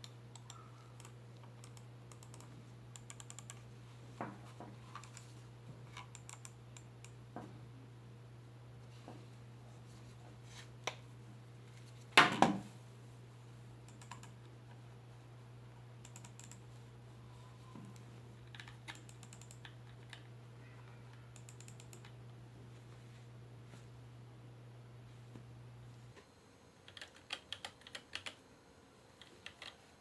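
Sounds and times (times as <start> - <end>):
mechanical keyboard keys clicking: 0.3 - 3.6, 6.0 - 6.9, 13.9 - 14.4, 16.0 - 16.6, 18.4 - 20.2, 26.9 - 28.4, 29.2 - 29.8.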